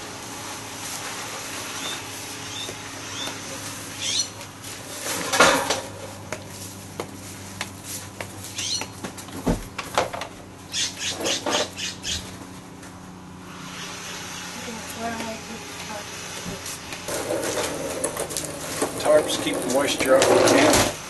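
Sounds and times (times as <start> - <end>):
items clattering and knocking: 5.0 - 6.2, 17.1 - 21.0.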